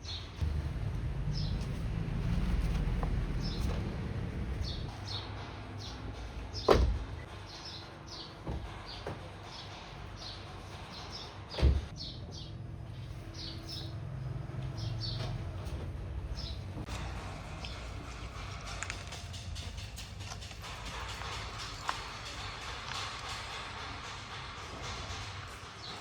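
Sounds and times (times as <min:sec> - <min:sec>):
small birds chirping: 0:07.3 - 0:14.0, 0:14.7 - 0:15.6.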